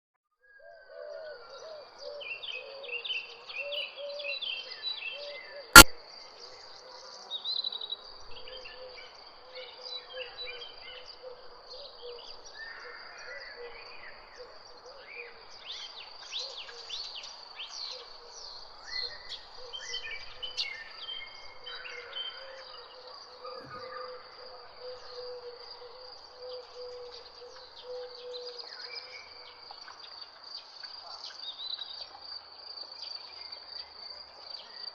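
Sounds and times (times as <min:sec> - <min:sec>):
songbirds chirping: 0:00.4 - 0:34.9
sharp click: 0:05.8 - 0:06.0.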